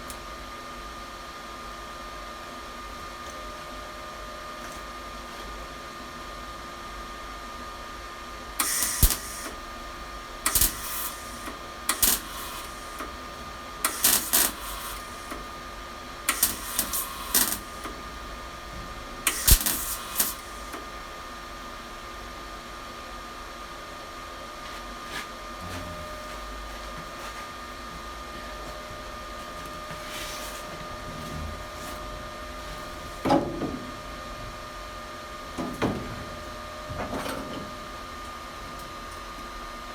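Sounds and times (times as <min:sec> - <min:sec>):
faint steady whine: 0:08.5 - 0:24.2
welder tack welding steel: 0:08.6 - 0:21.8.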